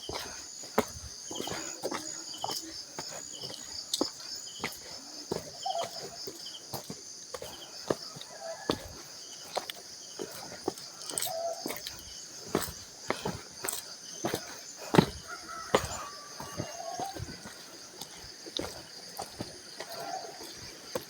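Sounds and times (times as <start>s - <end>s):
insects chirping: 0.0s - 21.0s
knocks and footstep-like clicks: 10.6s - 21.0s.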